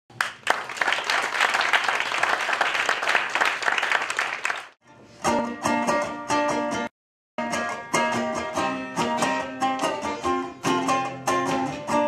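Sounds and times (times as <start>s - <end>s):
audience applauding: 0.1s - 4.8s
instrumental music: 4.8s - 12.0s.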